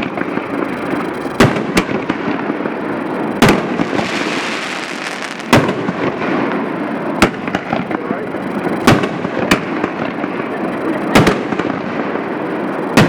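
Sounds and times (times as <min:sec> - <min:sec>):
firework booms: 0:00.0 - 0:13.0
noisy hiss: 0:00.0 - 0:13.0.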